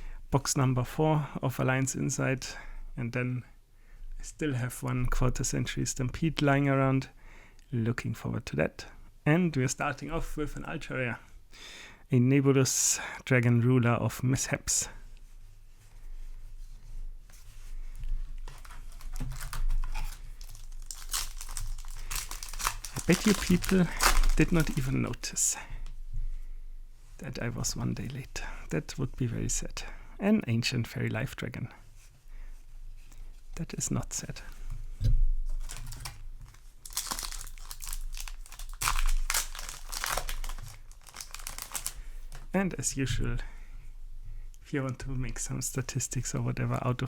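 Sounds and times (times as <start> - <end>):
low steady hum: 12.1 - 47.0
foil wrapper tearing and crinkling: 18.5 - 25.4, 35.6 - 42.4.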